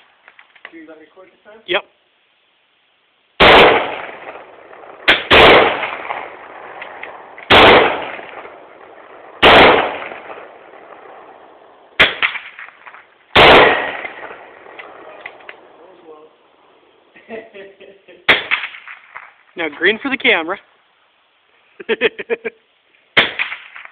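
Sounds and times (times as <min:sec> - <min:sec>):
short sharp cracks: 0:03.4 - 0:11.3, 0:12.0 - 0:15.9, 0:18.3 - 0:19.8, 0:23.1 - 0:23.9
rifle shots echoing: 0:03.4 - 0:16.7, 0:18.3 - 0:19.4, 0:23.1 - 0:23.9.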